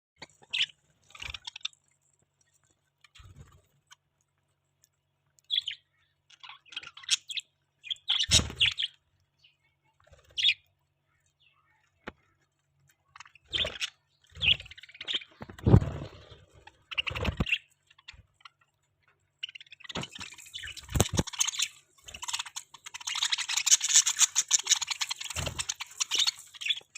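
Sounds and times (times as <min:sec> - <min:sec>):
budgerigars chirping: 0:00.2 - 0:01.8, 0:05.5 - 0:09.0, 0:10.2 - 0:10.7, 0:13.1 - 0:26.9.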